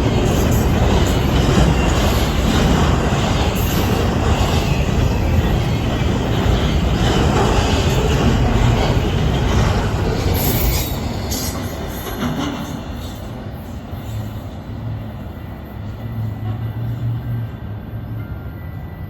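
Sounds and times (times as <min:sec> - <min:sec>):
wheels clattering on rails: 0:00.0 - 0:13.3
freight train cars rolling past: 0:00.0 - 0:19.0.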